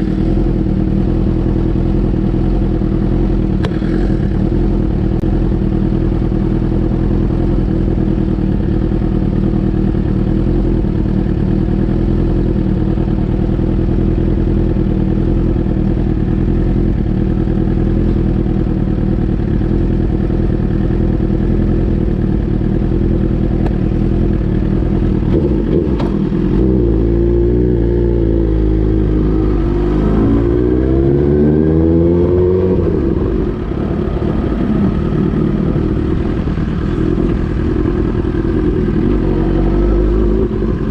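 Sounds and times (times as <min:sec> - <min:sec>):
motorcycle engine running: 0:00.0 - 0:40.9.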